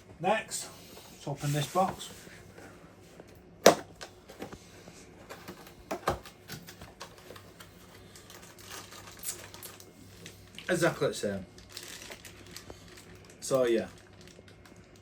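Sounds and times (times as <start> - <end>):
packaging rustle: 6.6 - 11.0, 11.6 - 15.0.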